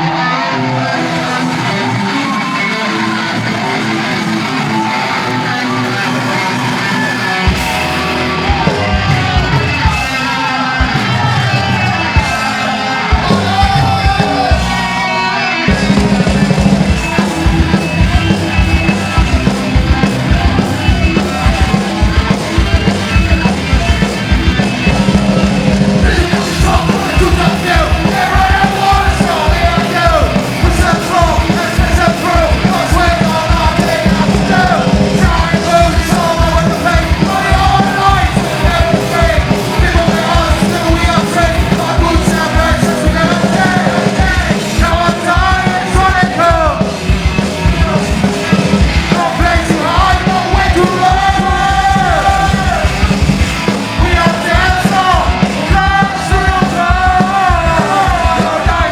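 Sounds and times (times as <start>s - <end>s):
drums: 0.0s - 58.9s
electric guitar: 0.0s - 58.9s
punk rock band playing: 0.0s - 58.9s
shouted vocals: 0.0s - 58.9s.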